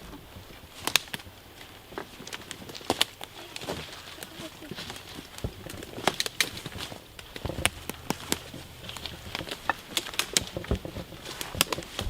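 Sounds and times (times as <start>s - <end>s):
dry leaves crunching underfoot: 0.0s - 12.0s.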